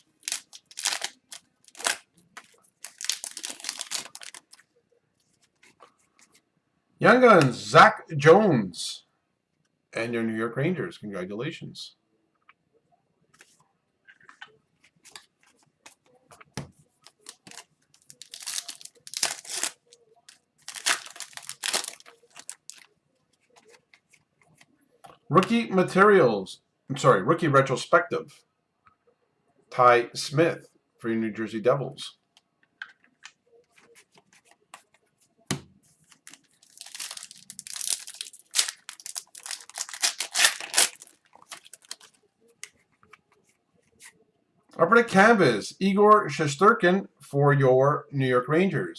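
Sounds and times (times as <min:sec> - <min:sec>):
foil wrapper tearing and crinkling: 0:00.0 - 0:02.0, 0:02.8 - 0:04.6, 0:17.1 - 0:19.9, 0:20.6 - 0:22.9, 0:36.2 - 0:42.1
cards clicking and rustling: 0:00.0 - 0:04.6, 0:17.1 - 0:22.9, 0:36.1 - 0:43.2.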